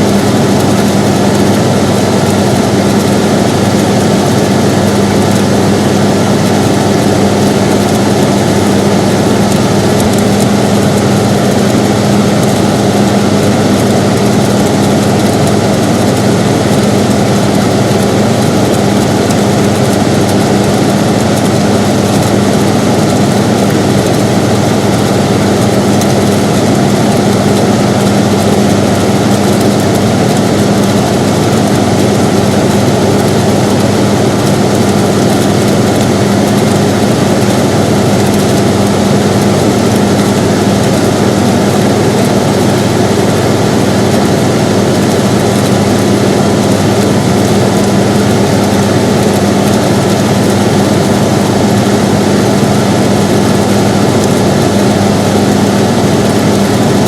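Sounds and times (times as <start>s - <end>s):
air conditioner running: 0.0s - 57.0s.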